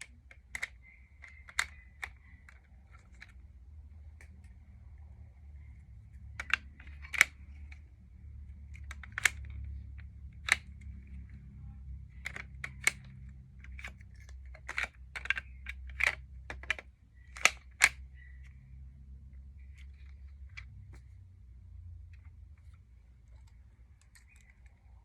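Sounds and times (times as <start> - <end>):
plastic toy pistol clicking: 0.0 - 3.5, 6.3 - 7.8, 8.7 - 11.4, 12.1 - 18.0.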